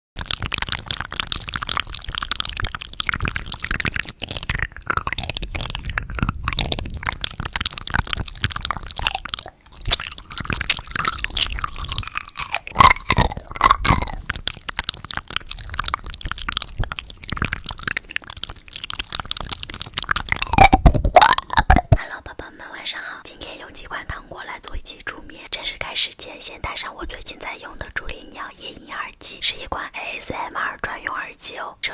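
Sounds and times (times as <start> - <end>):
candy being crunched and chewed: 0.2 - 22.8.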